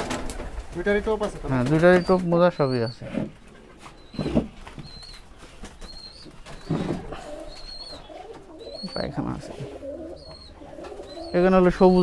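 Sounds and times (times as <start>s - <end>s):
pigeons cooing: 0.0s - 12.0s.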